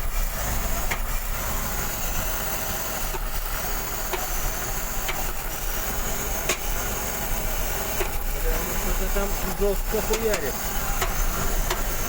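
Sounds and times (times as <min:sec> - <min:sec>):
car engine idling rough: 0:00.0 - 0:12.0
sharp engine knocks: 0:09.9 - 0:12.0.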